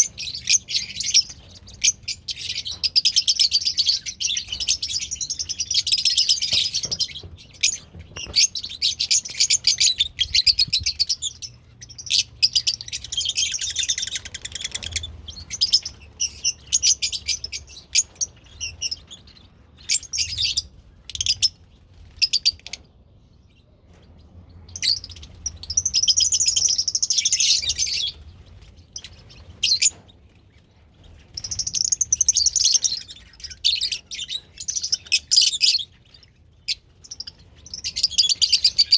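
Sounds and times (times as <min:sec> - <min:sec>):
parrots chattering and chirping: 0:00.0 - 0:22.8, 0:31.2 - 0:38.9.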